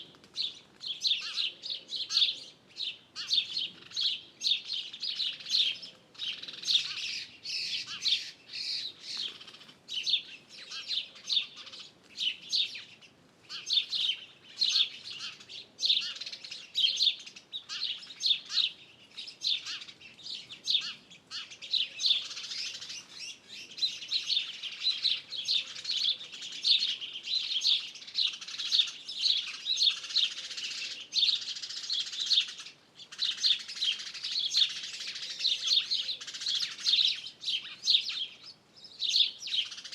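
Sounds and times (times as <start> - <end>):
songbirds chorus chirping: 0.0 - 39.9.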